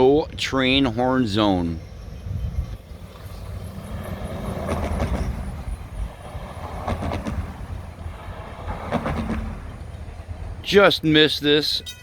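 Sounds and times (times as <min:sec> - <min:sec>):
train cars rumbling: 0:00.0 - 0:12.0
wheel clicks over rail joints: 0:04.2 - 0:10.3.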